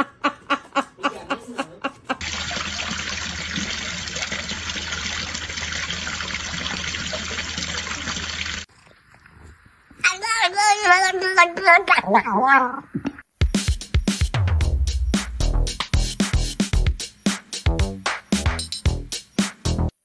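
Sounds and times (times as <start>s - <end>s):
running water: 2.2s - 8.7s.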